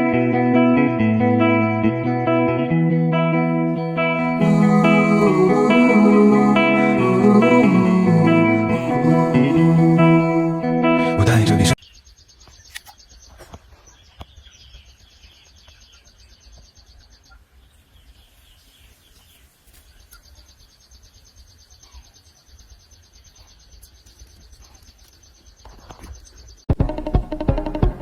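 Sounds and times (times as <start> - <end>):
faint bird chirps: 11.8 - 26.7.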